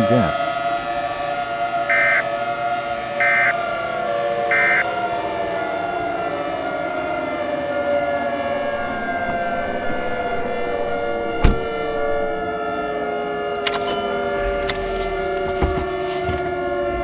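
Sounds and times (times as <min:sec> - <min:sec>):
sharp thump: 0:08.6 - 0:12.4.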